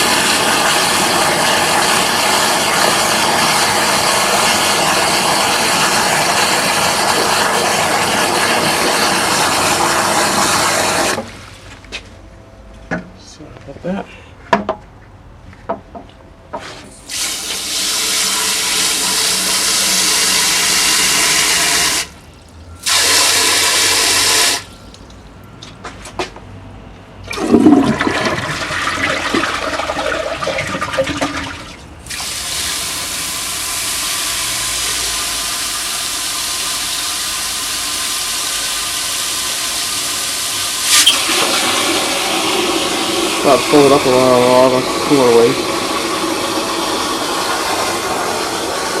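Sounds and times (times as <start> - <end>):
water rushing into toilet: 0.0 - 11.7, 17.1 - 25.7, 27.3 - 49.0
splashing gurgle: 17.8 - 26.0.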